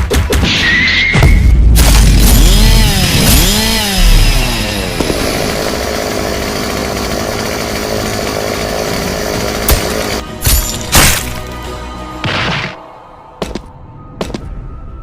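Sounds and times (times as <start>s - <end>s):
chainsaw revving: 2.0s - 10.2s.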